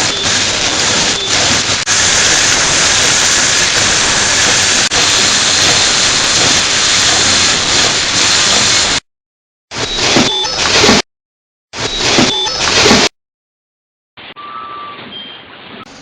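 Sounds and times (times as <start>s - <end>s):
loud steady hissing: 0.0s - 9.0s.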